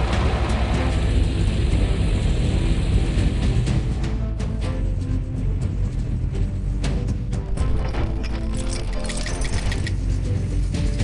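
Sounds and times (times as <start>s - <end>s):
music with heavy drum pulse: 0.0s - 8.4s.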